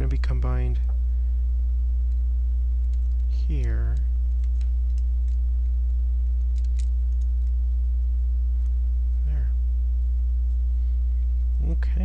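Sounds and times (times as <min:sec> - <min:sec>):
low electrical hum: 0:00.0 - 0:12.0
person murmuring: 0:09.2 - 0:09.6, 0:11.6 - 0:12.0.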